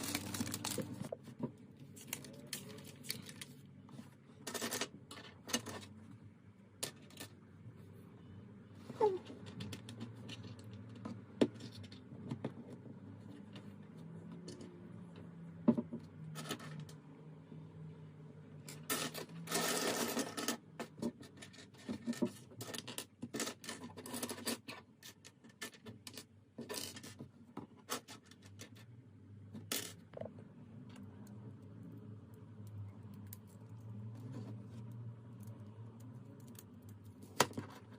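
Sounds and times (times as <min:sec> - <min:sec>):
plastic pieces rustling: 0:00.0 - 0:01.2.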